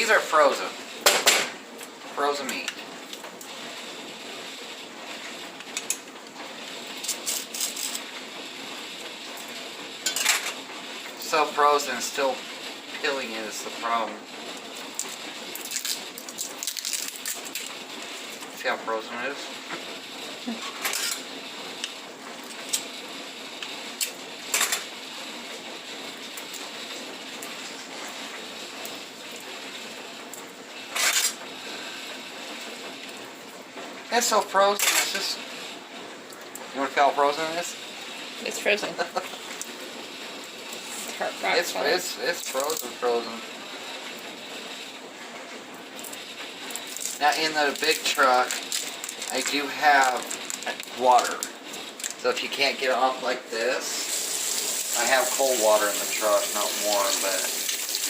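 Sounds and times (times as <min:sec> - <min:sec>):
plastic packaging crackling: 0:14.9 - 0:17.7, 0:46.0 - 0:52.2
steady hiss: 0:53.8 - 0:58.0.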